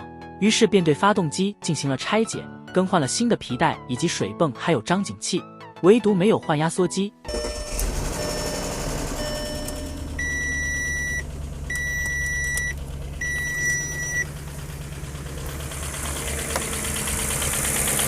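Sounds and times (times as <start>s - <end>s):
long electronic beeps: 7.3s - 14.3s
car engine idling: 7.3s - 18.0s.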